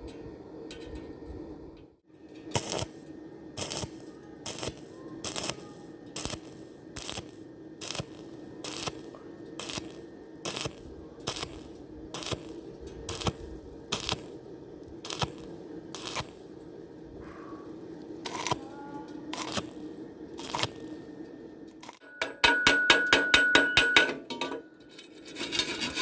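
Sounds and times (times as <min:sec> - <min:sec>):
steady hum: 0:00.0 - 0:25.6
welding arc crackling: 0:02.2 - 0:22.0.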